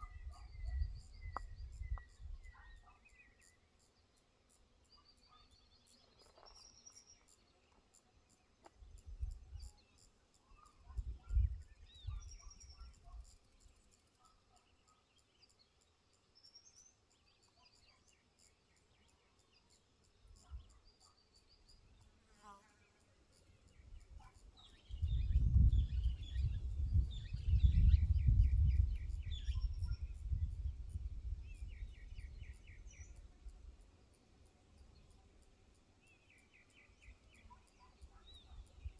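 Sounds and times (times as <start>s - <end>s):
birds chirping and trilling: 23.5s - 38.9s.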